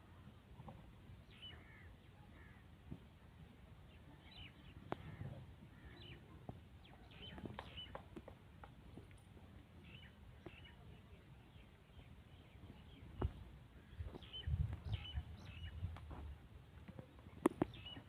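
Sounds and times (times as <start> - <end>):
faint bird chirps: 1.2 - 2.7, 3.9 - 8.2, 9.8 - 15.9, 16.9 - 18.0.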